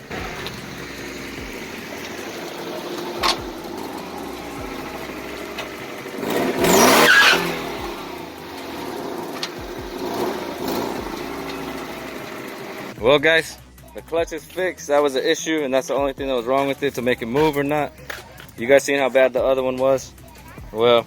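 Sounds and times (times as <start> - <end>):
car engine revving: 0.0 - 13.2.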